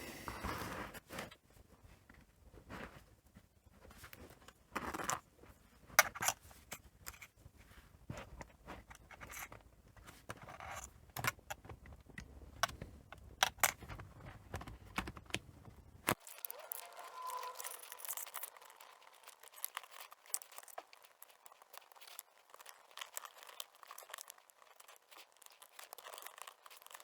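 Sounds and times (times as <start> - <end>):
small clicks taps and scrapes: 5.9 - 7.4, 8.1 - 27.0.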